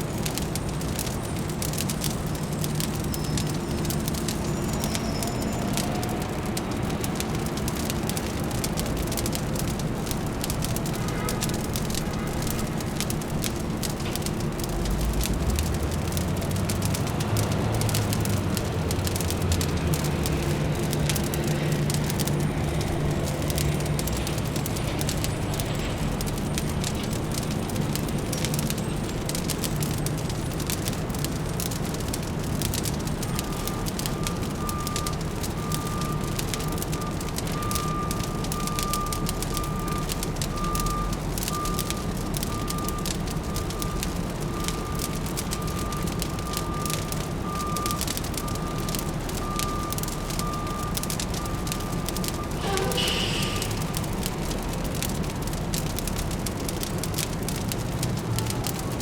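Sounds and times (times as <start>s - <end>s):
fire crackling: 0.0s - 59.0s
low city hum: 0.0s - 59.0s
deep low rumble: 52.6s - 55.8s.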